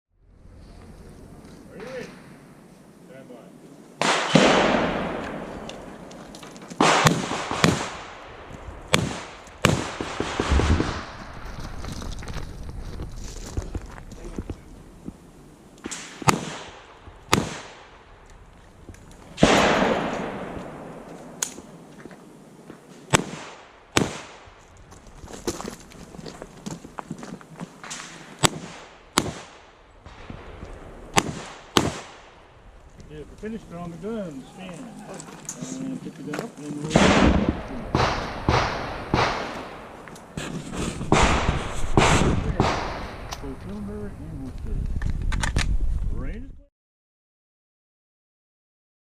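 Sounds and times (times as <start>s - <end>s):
handgun shots: 31.2s - 32.1s.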